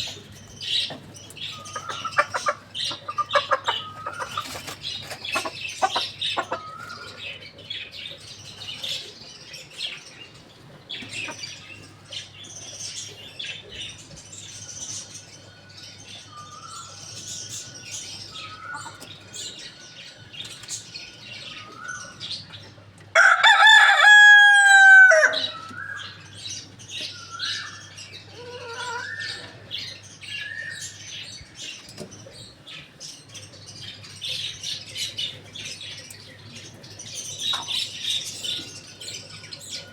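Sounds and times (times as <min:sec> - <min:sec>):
small birds chirping: 0:00.0 - 0:24.0, 0:25.1 - 0:39.9
chickens clucking: 0:00.0 - 0:39.9
rooster crowing: 0:23.1 - 0:25.6.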